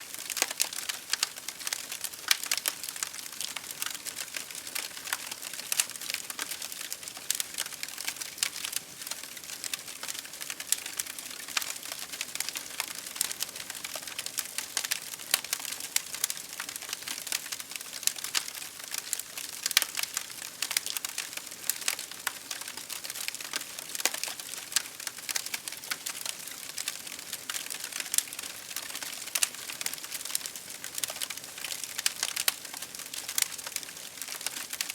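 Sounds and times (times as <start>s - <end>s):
campfire crackling and popping: 0.0s - 34.9s.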